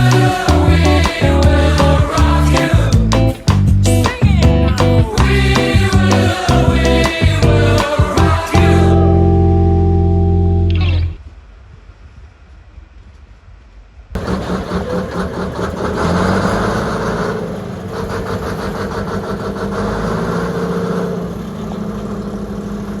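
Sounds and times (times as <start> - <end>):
diesel locomotive engine idling: 14.2 - 23.0.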